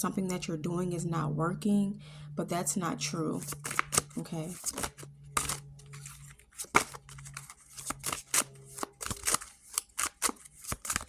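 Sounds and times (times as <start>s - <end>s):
faint low hum: 0.0s - 11.0s
cards riffling and snapping: 3.4s - 11.0s.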